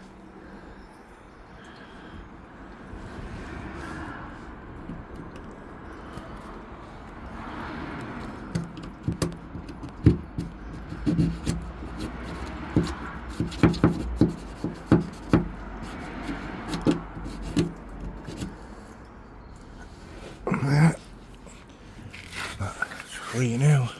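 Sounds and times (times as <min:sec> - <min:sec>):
screwdriver tapping and scraping metal: 0:08.2 - 0:18.6.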